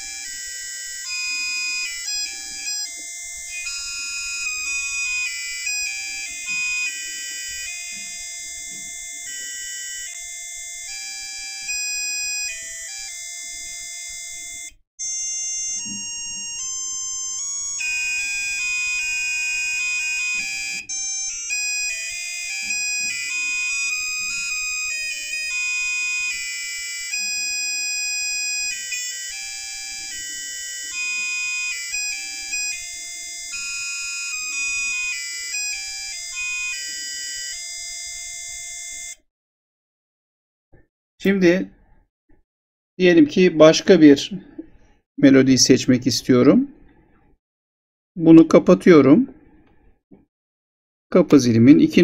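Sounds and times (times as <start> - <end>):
buzzer playing electronic melody: 0.0 - 39.2.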